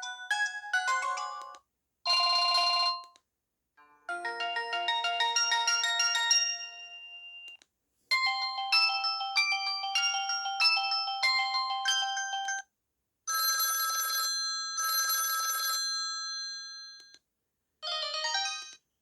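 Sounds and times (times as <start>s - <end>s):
mobile phone ringtone melodies: 0.0s - 3.1s, 4.1s - 7.5s, 8.1s - 12.6s, 17.8s - 18.8s.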